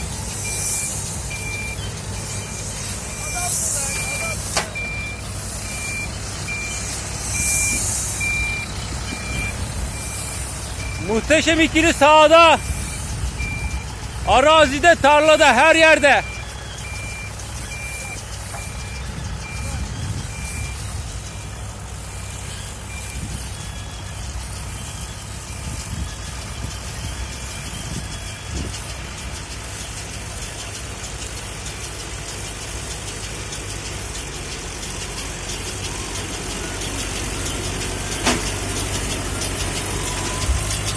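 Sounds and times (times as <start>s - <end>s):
high electronic beep: 0.0s - 31.0s
tractor engine running: 0.0s - 40.9s
brief hiss: 0.1s - 11.0s.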